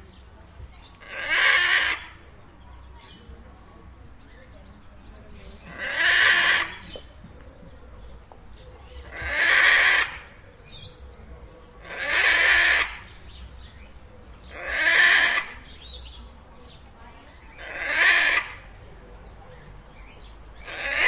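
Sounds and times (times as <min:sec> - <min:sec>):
macaw squawking: 0:05.7 - 0:06.9, 0:11.8 - 0:13.1, 0:14.5 - 0:15.7, 0:17.6 - 0:18.7.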